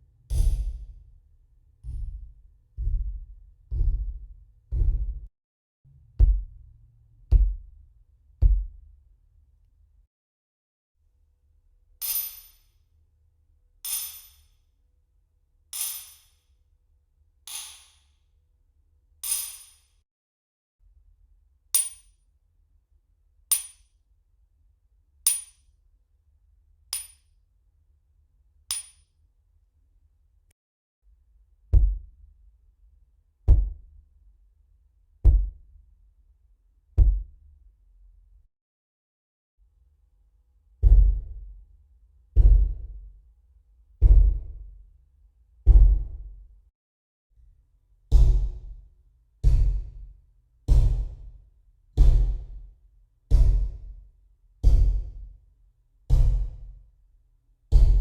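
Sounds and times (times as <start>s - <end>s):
hammer striking hard surface: 0.3s - 1.0s, 1.8s - 5.3s.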